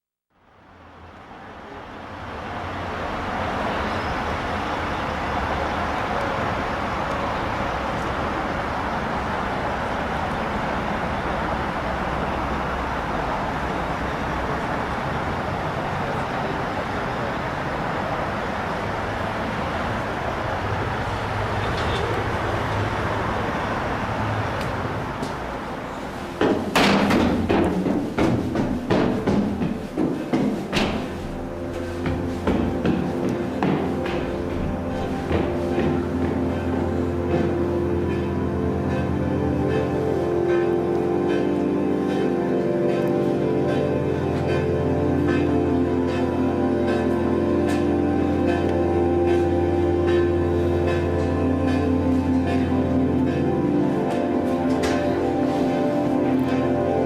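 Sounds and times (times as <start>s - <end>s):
low hum: 0.4s - 26.4s, 31.0s - 57.0s
noise-punk band playing: 26.2s - 57.0s.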